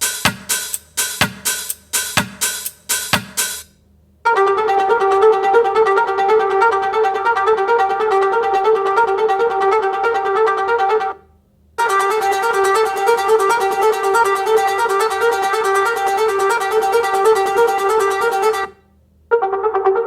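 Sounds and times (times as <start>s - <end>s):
fast rhythmic instrumental music: 0.0s - 3.7s, 11.8s - 18.7s.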